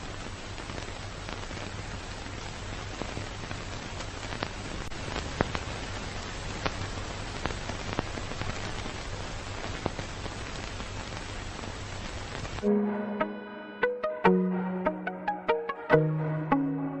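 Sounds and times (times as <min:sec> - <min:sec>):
crackling pops and clicks: 0:00.0 - 0:12.6
steady hiss: 0:00.0 - 0:12.8.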